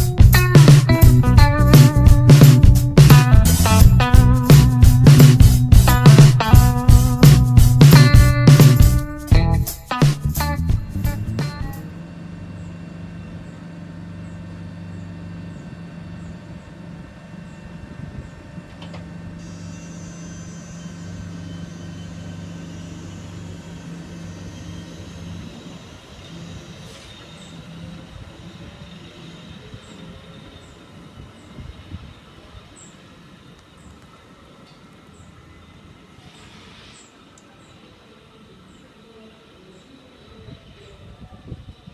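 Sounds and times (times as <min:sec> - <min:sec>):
electric train running: 0:00.0 - 0:17.8, 0:18.7 - 0:40.9
high whine: 0:00.0 - 0:32.6.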